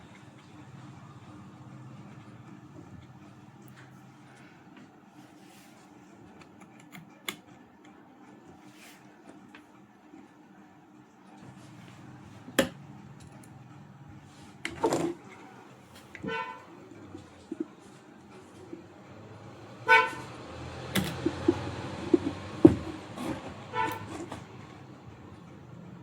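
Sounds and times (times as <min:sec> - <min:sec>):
vehicle horn honking: 0:16.2 - 0:16.7, 0:19.8 - 0:20.4, 0:23.6 - 0:24.4
parts clicking and knocking: 0:20.8 - 0:24.8.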